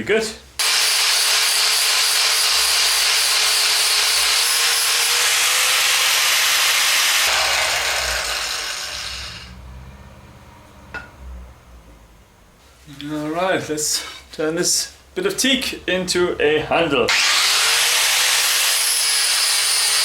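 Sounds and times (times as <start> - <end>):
power tool whining: 0.6 - 9.6, 17.1 - 20.0.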